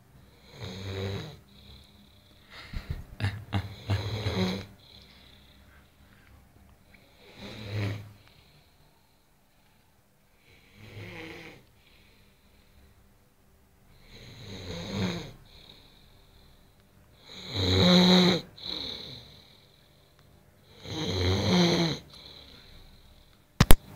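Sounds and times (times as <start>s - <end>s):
man snoring: 0.3s - 5.8s, 7.2s - 8.2s, 10.4s - 11.7s, 14.0s - 15.9s, 17.2s - 19.7s, 20.7s - 22.6s.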